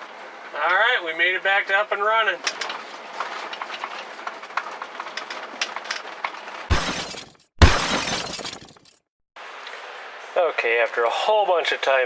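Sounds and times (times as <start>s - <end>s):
loud crashes: 6.7s - 8.8s.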